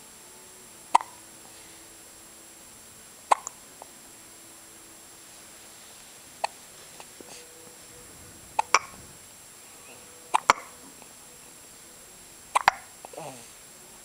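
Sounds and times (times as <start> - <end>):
baby hiccupping: 12.5 - 13.4.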